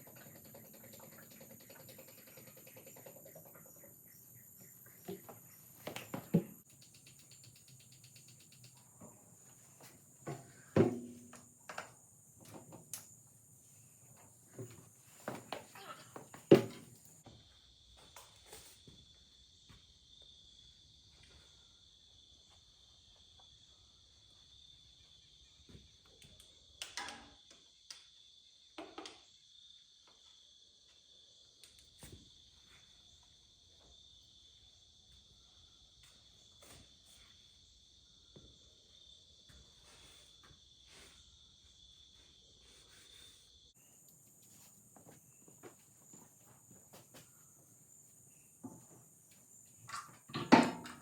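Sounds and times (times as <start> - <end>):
high-pitched insect trill: 0.0 - 20.9.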